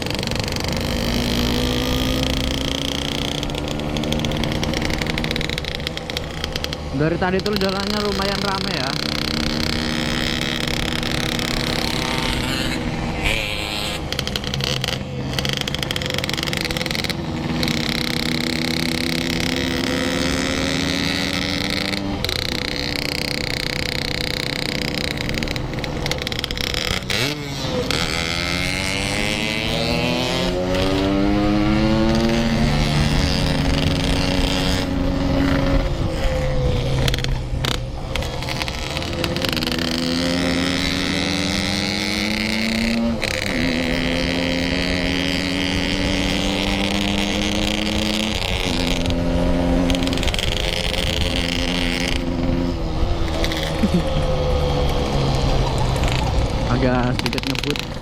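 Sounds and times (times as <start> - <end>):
motorcycle engine accelerating: 0.0 - 58.0.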